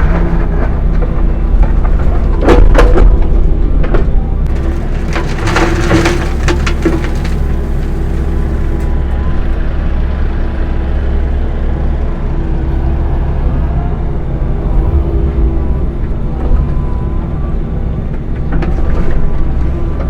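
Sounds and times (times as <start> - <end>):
excavator engine running: 0.0 - 20.0
concrete cracking and crunching: 4.4 - 9.2.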